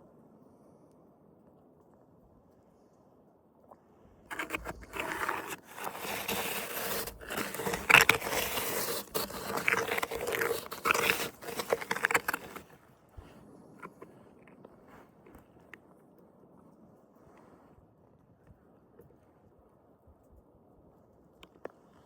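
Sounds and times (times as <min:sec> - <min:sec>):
snow crunching and scraping: 0:04.3 - 0:12.8.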